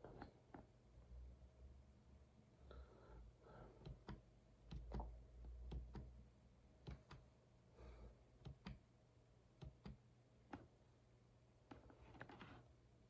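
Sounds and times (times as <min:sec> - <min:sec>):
computer keys clicking: 0:05.7 - 0:06.1, 0:08.4 - 0:08.8.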